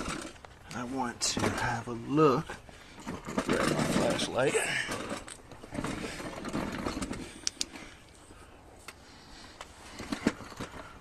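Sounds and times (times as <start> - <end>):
sharp clicks and taps: 7.4 - 7.7.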